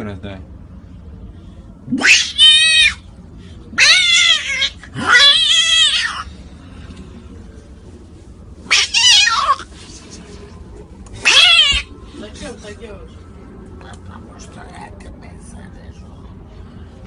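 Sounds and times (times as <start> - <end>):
cat meowing loudly: 1.9 - 3.1, 3.8 - 6.3, 8.6 - 9.7, 11.2 - 12.0.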